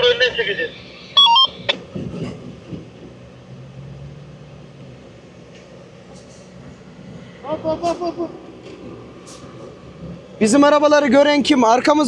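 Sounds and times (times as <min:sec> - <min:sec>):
short electronic beep: 0:00.9 - 0:01.8.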